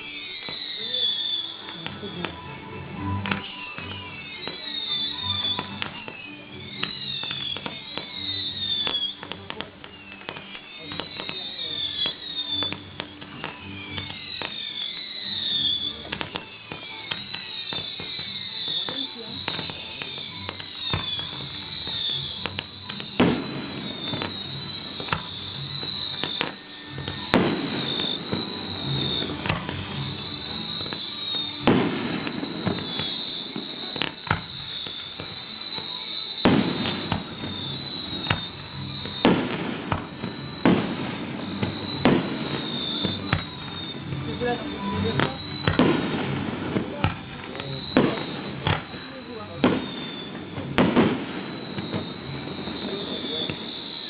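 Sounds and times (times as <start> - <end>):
fireworks bangs and crackles: 0.0 - 54.0
fireworks whistles gliding down: 0.0 - 54.0
firework shells booming: 30.6 - 43.9, 45.1 - 49.0, 49.6 - 54.0.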